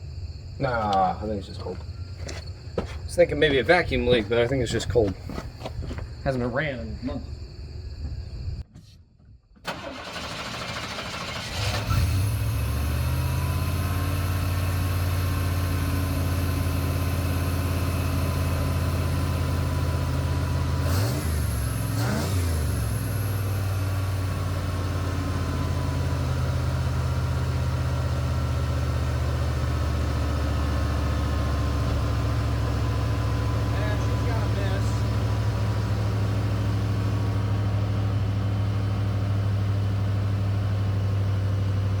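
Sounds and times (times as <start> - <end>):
pickup engine starting and idling: 9.6 - 42.0
engine revving: 9.7 - 42.0.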